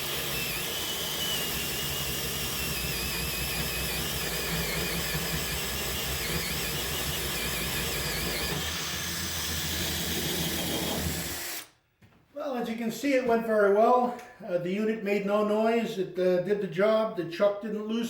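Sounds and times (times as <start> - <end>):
drill motor whining under load: 0.0 - 11.7.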